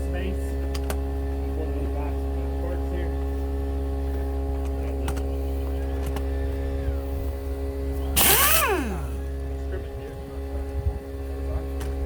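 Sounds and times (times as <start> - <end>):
steady hum: 6.3 - 11.2
air impact wrench: 8.2 - 9.3.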